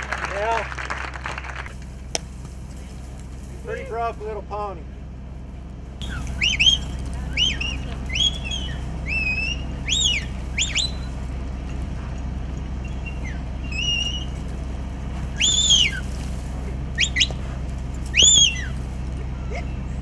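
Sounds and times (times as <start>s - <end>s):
low rumble: 0.0s - 20.0s
bird chirping: 6.0s - 11.2s, 12.0s - 14.4s, 15.3s - 16.2s, 17.0s - 17.4s, 18.0s - 19.8s.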